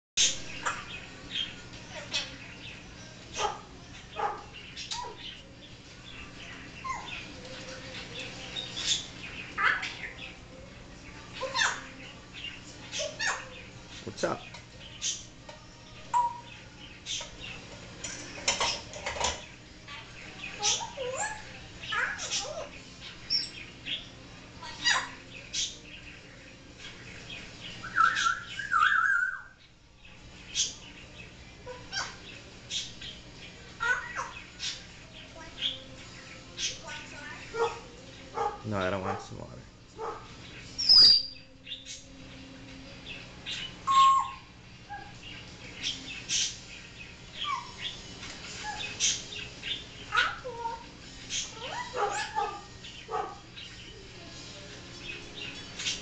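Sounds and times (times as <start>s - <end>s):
parrot calls and chirps: 0.2s - 5.5s, 6.1s - 10.5s, 11.3s - 15.4s, 16.0s - 42.2s, 43.1s - 56.0s
parrot high chirps: 11.3s - 12.0s, 12.9s - 13.6s, 16.1s - 16.5s, 19.9s - 23.6s, 24.6s - 25.8s, 27.8s - 29.6s, 31.6s - 32.9s, 33.8s - 34.9s, 40.8s - 41.4s, 43.6s - 45.2s, 47.3s - 53.5s
parrot warbling whistle: 43.8s - 44.5s.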